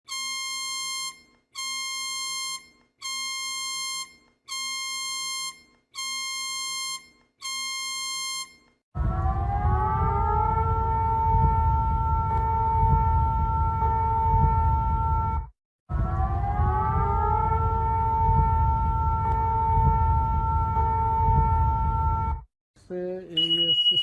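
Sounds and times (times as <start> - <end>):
warning siren: 0.1 - 22.5
low rumbling noise: 9.0 - 22.5.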